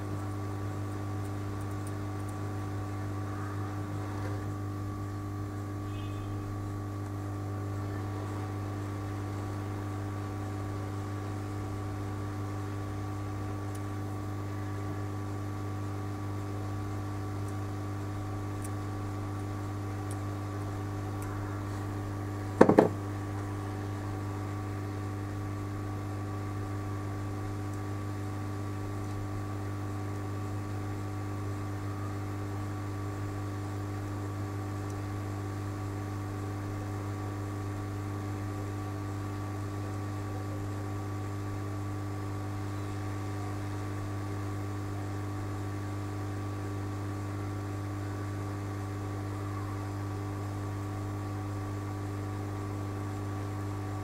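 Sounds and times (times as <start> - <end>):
electrical hum: 0.0 - 54.0
short knock: 22.6 - 23.0.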